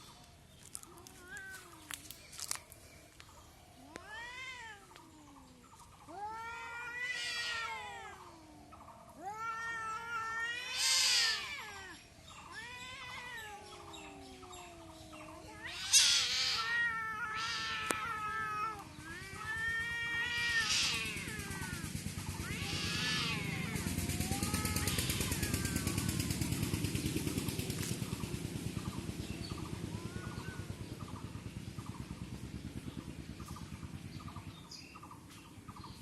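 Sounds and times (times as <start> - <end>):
cats yowling in a fight: 0.7 - 2.6, 3.7 - 28.2, 29.6 - 30.8.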